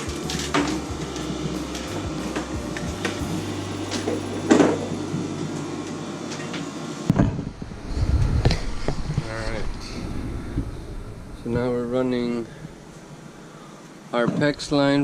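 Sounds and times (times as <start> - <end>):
knocks and clatter of work: 0.0 - 5.2
steady low hum: 0.0 - 15.0.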